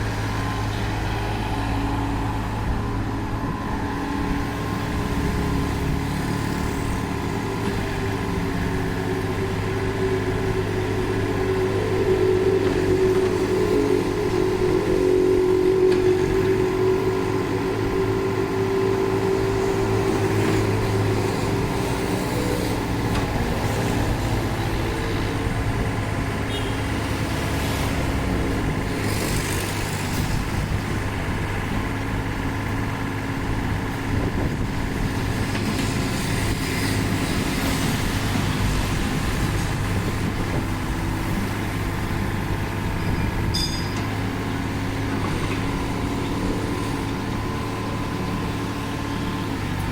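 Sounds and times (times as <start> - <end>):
diesel engine running: 0.0 - 49.9
higher tone: 7.9 - 26.7.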